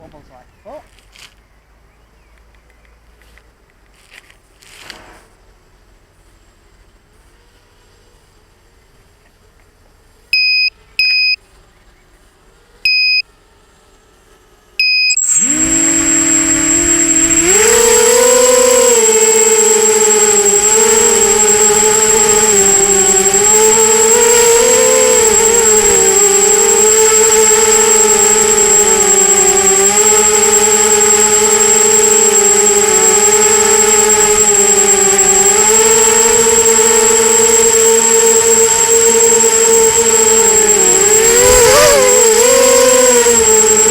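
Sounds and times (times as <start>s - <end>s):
short electronic beeps: 10.4s - 11.4s, 12.9s - 13.2s, 14.8s - 43.9s
drone motors whining: 14.8s - 43.9s
quadcopter propellers buzzing: 15.1s - 43.9s.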